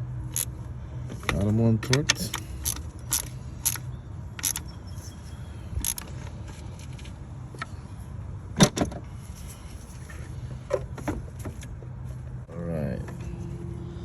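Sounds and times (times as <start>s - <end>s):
tools clicking and knocking: 1.2s - 3.8s, 4.4s - 4.7s.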